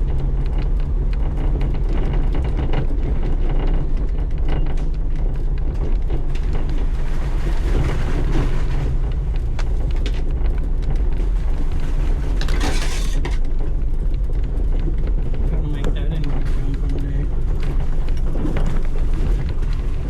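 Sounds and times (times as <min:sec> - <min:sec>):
off-road vehicle engine rumble: 0:00.0 - 0:20.0.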